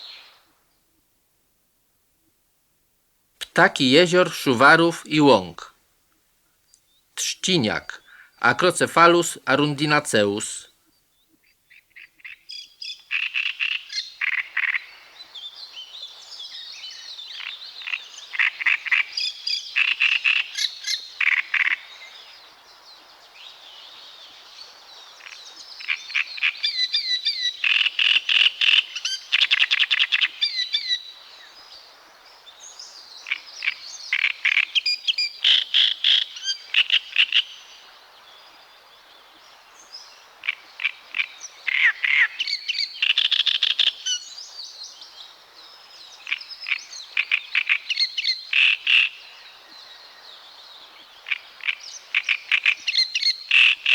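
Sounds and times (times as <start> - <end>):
great reed warbler singing: 3.4 - 5.7, 6.7 - 10.6.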